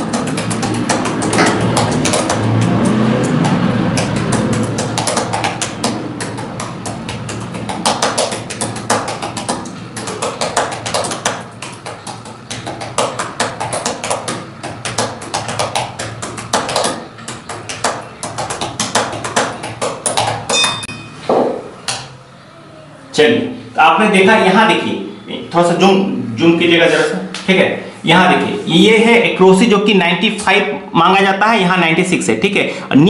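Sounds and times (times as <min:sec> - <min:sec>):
fast typing on keyboard: 0:00.0 - 0:20.5.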